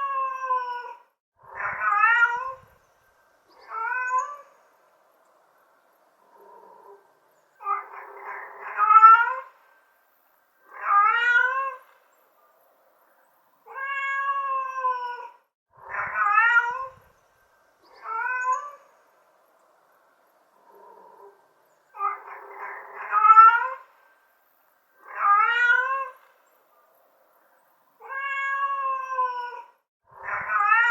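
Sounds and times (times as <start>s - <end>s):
cat meowing: 1.6s - 2.7s, 3.6s - 4.5s, 7.6s - 9.5s, 10.7s - 11.9s, 13.7s - 17.1s, 17.9s - 18.8s, 22.0s - 23.9s, 25.0s - 26.3s, 28.0s - 30.9s.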